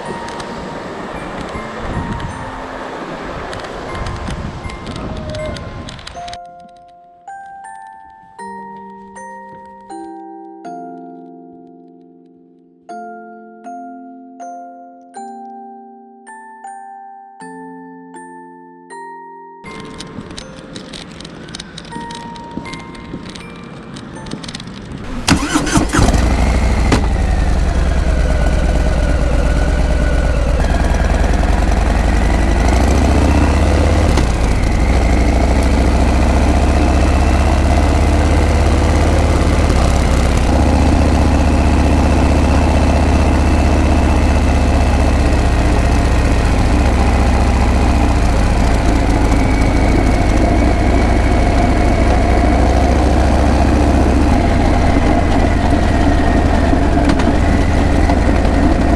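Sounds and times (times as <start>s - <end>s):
motorcycle engine starting and idling: 25.0s - 58.9s.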